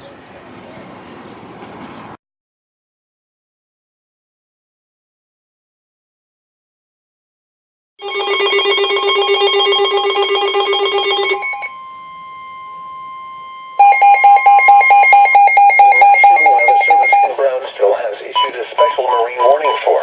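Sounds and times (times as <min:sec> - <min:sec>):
steady alarm tone: 0:08.0 - 0:17.7, 0:18.3 - 0:20.0
fast warbling electronic alarm: 0:08.0 - 0:20.0.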